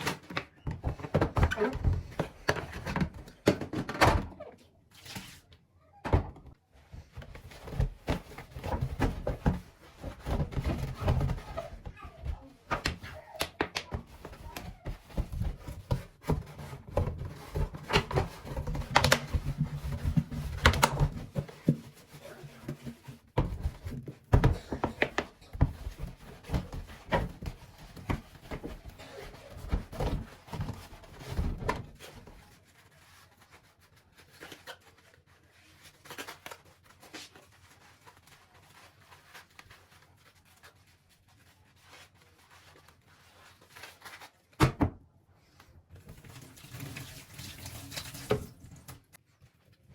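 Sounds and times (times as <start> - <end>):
household items clattering: 0.0 - 4.5, 6.1 - 32.4.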